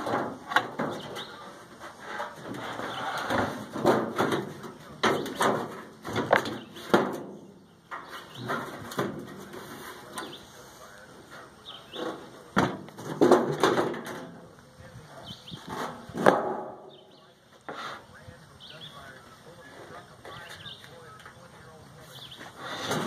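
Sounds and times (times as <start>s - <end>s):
sheet metal knocks and rattles: 0.0s - 10.3s, 12.0s - 14.4s, 15.7s - 16.9s.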